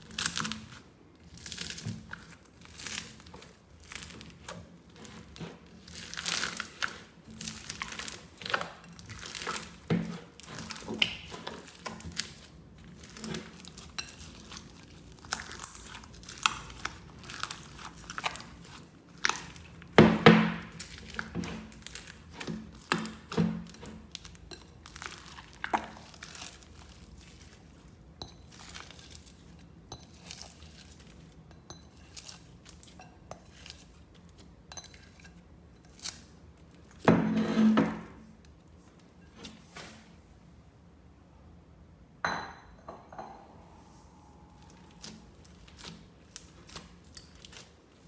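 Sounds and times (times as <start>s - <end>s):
slime clicking and crackling: 0.0s - 27.7s.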